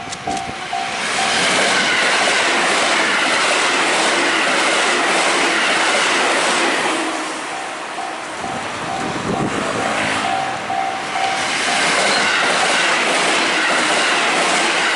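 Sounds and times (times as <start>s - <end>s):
train passing close by: 0.0s - 14.9s.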